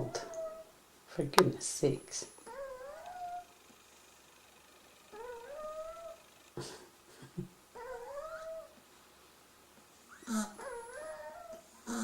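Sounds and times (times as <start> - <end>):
puppies squeaky whining snores: 0.0 - 0.8, 2.3 - 6.9, 7.7 - 8.8, 10.0 - 12.0.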